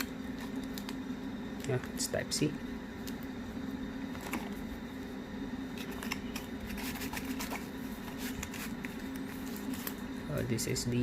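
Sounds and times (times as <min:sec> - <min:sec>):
steady low hum: 0:00.0 - 0:11.0
packaging clicks and rustles: 0:05.8 - 0:10.1.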